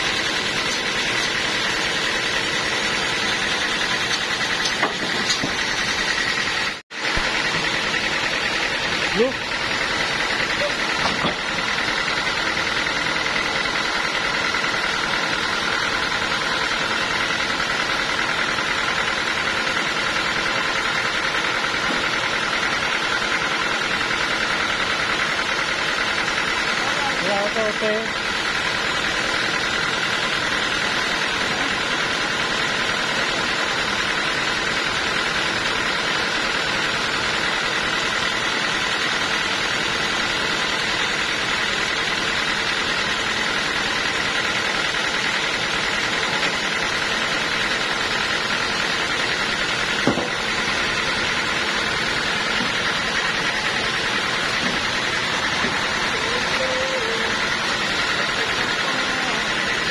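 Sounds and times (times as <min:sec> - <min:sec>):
sawmill machinery droning: 0:00.0 - 0:59.9
sharp knock: 0:50.0 - 0:50.4.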